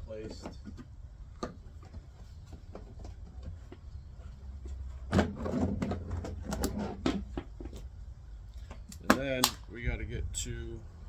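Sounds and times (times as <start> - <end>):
gas cap clicks and rattles: 8.9 - 9.7.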